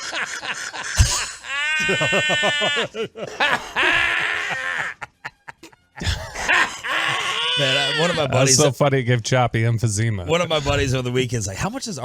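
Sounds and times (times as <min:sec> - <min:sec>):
man wheezing laughter: 0:00.0 - 0:08.2.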